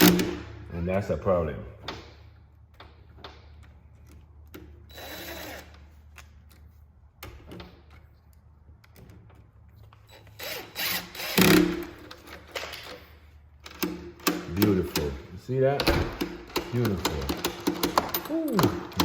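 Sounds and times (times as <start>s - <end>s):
cordless drill running: 4.9s - 5.8s, 10.1s - 11.8s
lock parts clicking: 11.4s - 19.0s.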